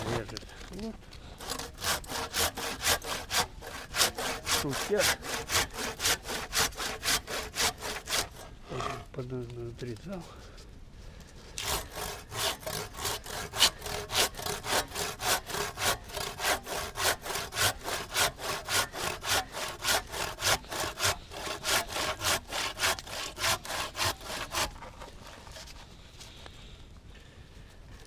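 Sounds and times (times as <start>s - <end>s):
hand saw cutting log: 1.4s - 8.5s, 11.5s - 25.8s.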